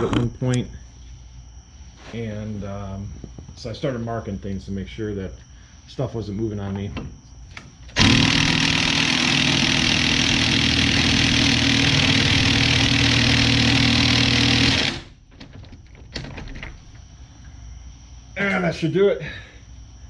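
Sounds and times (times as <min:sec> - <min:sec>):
impact wrench running: 0:07.9 - 0:15.3.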